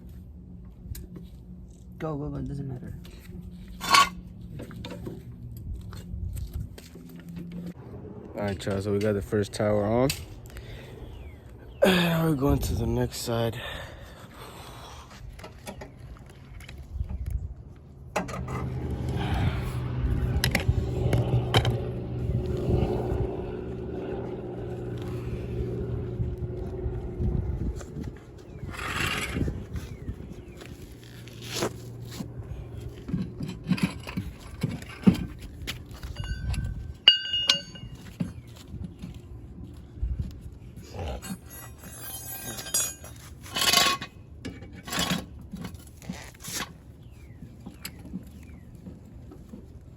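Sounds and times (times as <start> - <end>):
car engine running: 18.1 - 30.5
metal clinks: 36.1 - 38.0.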